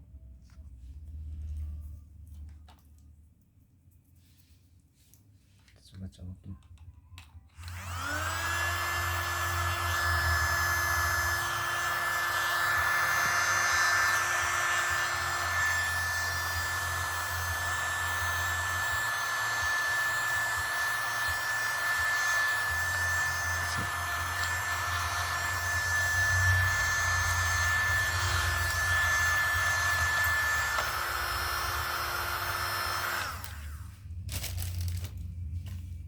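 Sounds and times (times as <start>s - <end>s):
small vacuum motor whining: 7.6s - 33.9s.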